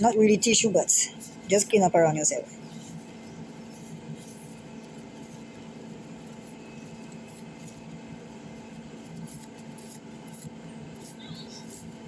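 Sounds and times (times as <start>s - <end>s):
tissue rubbing on phone screen: 2.6s - 12.0s.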